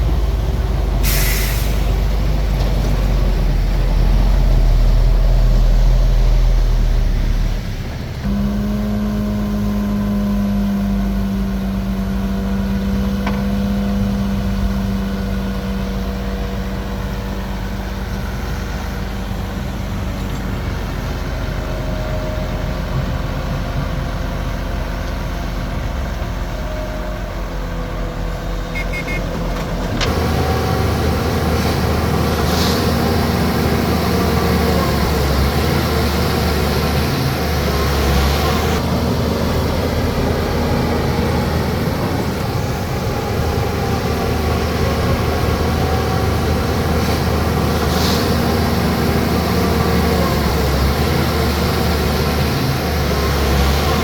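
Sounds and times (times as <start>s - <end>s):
heavy diesel machinery running: 0.0s - 54.0s.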